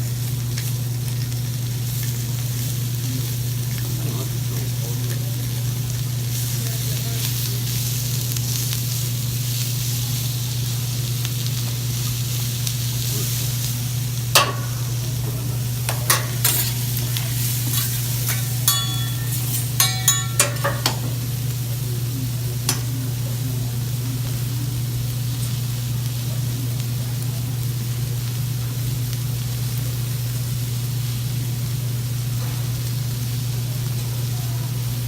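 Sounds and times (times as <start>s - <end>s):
food sizzling in frying: 0.0s - 35.0s
steady low hum: 11.5s - 26.6s
sharp metallic clinks: 17.7s - 21.0s.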